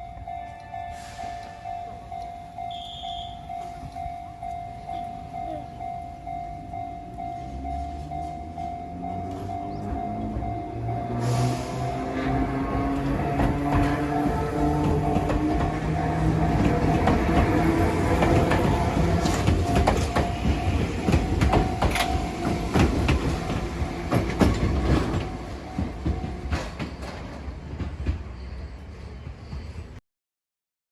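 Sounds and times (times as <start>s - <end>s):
electric train passing: 0.0s - 30.0s
wheels clicking over rail joints: 12.2s - 28.2s.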